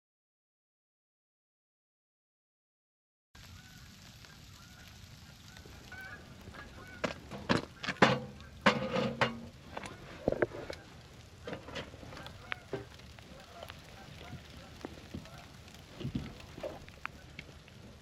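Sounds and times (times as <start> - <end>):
geese honking: 3.4 - 17.5.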